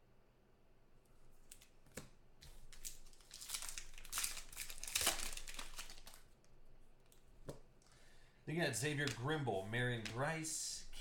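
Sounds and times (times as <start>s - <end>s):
wrapper crinkling and tearing: 2.6s - 6.4s.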